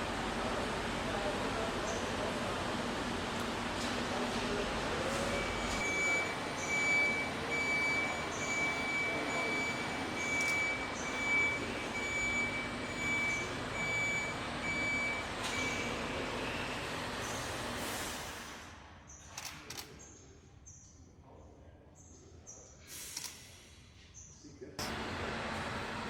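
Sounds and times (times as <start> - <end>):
factory hum and clatter: 0.0 - 20.0, 24.8 - 26.0
electronic warning beeper: 5.3 - 16.0.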